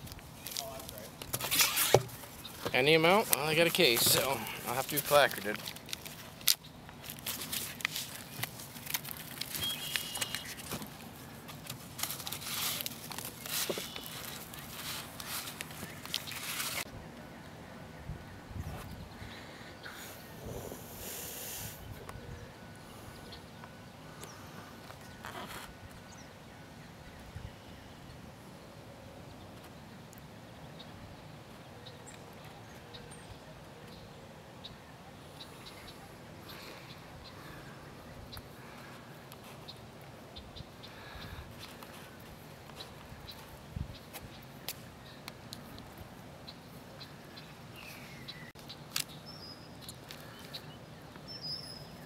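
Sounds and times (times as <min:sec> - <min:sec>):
faint outdoor background noise: 0:00.0 - 0:52.0
high whistling chirps: 0:09.6 - 0:10.6.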